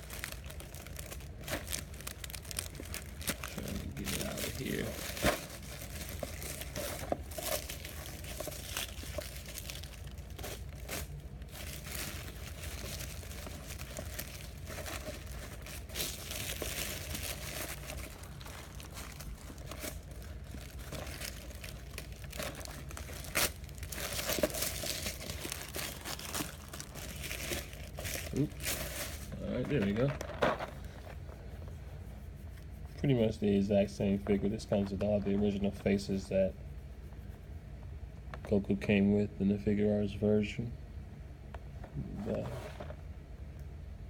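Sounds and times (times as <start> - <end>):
sharp plastic crackles: 0.0 - 31.2
packaging crinkling and rustling: 0.0 - 31.6.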